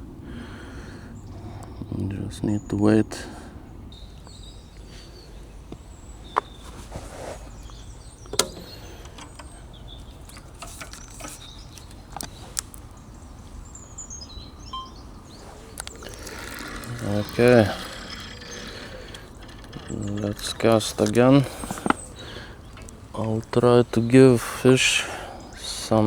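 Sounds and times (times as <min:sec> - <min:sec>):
low background noise: 0:00.0 - 0:26.0
small birds chirping: 0:00.0 - 0:26.0
sharp clicks: 0:08.2 - 0:12.8, 0:15.7 - 0:24.0.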